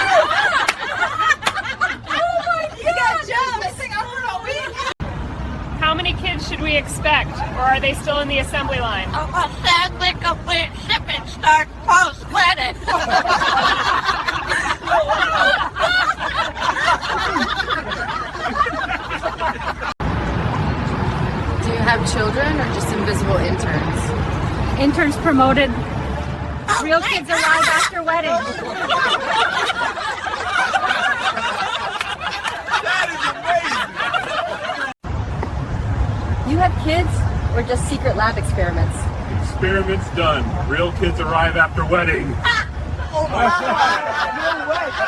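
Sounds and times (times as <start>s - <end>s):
people chuckling: 0.0s - 2.8s, 12.8s - 20.0s, 27.4s - 35.0s, 42.4s - 45.0s
people laughing: 0.0s - 5.0s, 12.4s - 20.0s, 26.7s - 35.0s, 42.2s - 45.0s.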